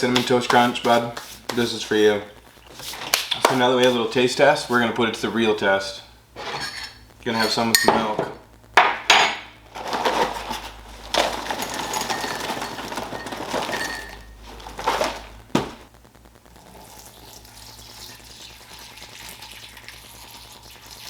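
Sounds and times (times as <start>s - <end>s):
milk pouring into cereal bowl: 16.6s - 21.0s.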